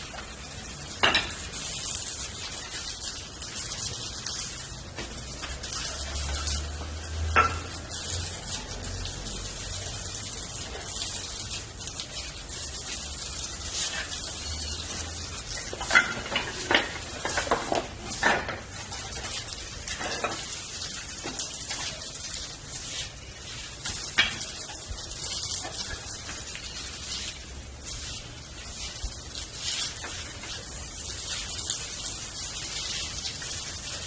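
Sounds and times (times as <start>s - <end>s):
wet firewood hissing: 8.0s - 34.0s.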